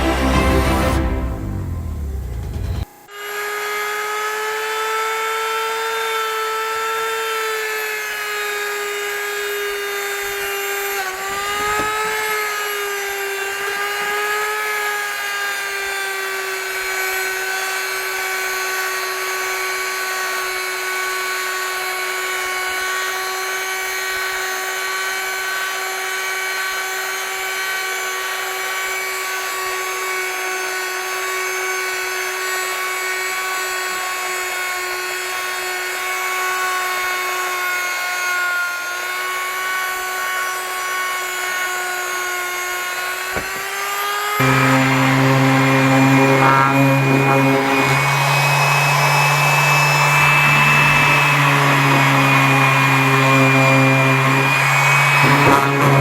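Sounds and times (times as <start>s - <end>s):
power tool whining: 0.0s - 56.0s.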